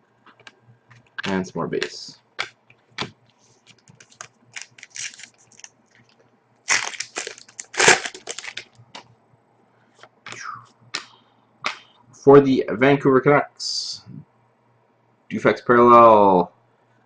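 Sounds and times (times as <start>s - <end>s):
cards being handled: 1.2s - 8.7s
foil wrapper crinkling: 3.7s - 8.8s.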